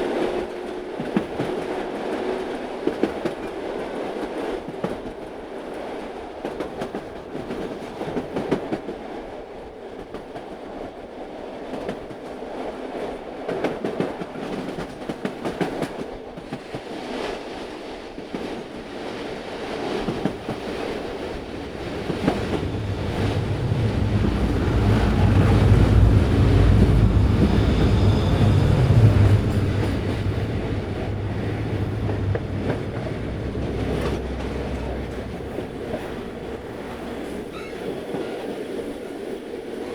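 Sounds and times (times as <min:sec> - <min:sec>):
train wheels clicking on rails: 0:11.6 - 0:39.9
deep train rumble: 0:19.4 - 0:39.3.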